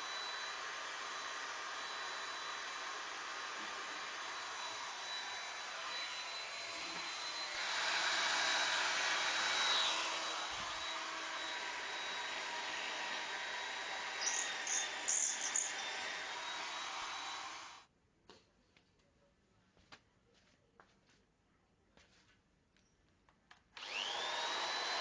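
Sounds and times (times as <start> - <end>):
small electric motor whining: 0.0 - 17.8, 23.8 - 25.0.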